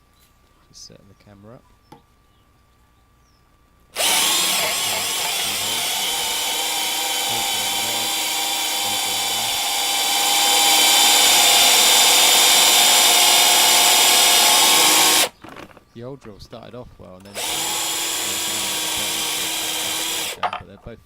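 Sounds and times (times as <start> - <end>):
cordless drills whining: 4.0 - 15.7, 17.2 - 20.4.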